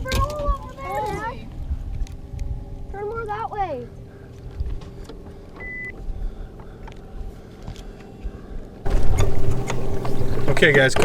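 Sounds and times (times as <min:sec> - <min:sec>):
boat motor humming: 0:08.9 - 0:11.0.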